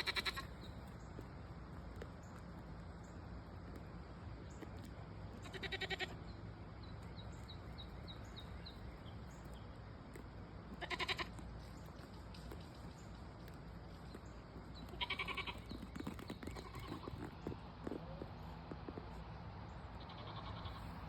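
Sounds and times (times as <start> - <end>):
livestock bleating: 0.0 - 0.5, 5.4 - 6.2, 10.8 - 11.4, 14.9 - 15.6, 20.0 - 20.9.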